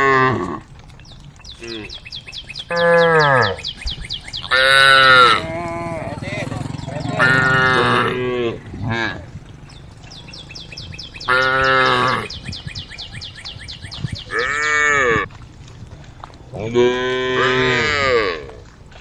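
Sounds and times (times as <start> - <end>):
cows mooing: 0.0 - 0.7, 2.6 - 13.3, 14.2 - 15.3, 16.6 - 18.7.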